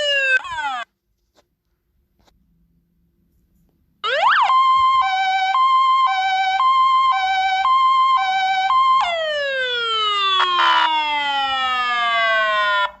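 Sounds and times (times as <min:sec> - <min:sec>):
siren winding down: 0:00.0 - 0:00.8, 0:04.0 - 0:13.0
two-tone siren: 0:00.0 - 0:00.9, 0:04.0 - 0:13.0.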